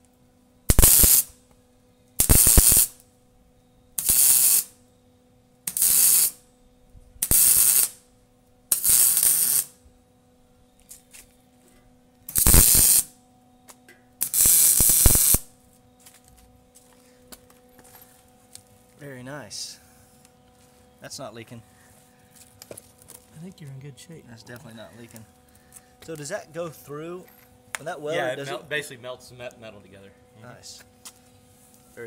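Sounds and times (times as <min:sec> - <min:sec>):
welding crackling and sizzling: 0:00.7 - 0:03.1, 0:04.0 - 0:04.8, 0:05.6 - 0:06.4, 0:07.2 - 0:08.1, 0:08.7 - 0:09.8, 0:12.2 - 0:13.2, 0:14.2 - 0:16.5.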